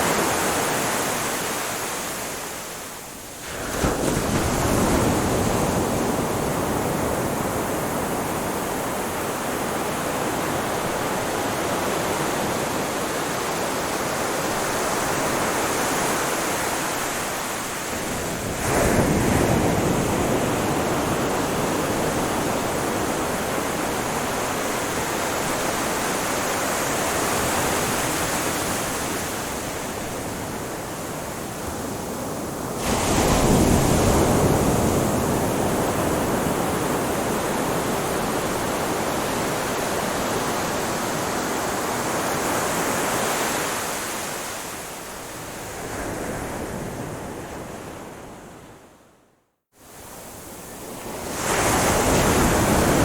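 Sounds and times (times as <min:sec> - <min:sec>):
ocean surf washing on shore: 0:00.0 - 0:48.8, 0:49.8 - 0:53.0
waves breaking suddenly: 0:03.4 - 0:07.5, 0:32.8 - 0:40.6, 0:51.2 - 0:53.0.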